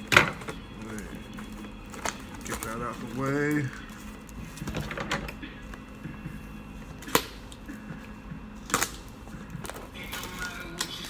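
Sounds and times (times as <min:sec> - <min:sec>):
packaging rustling: 0:00.0 - 0:05.8.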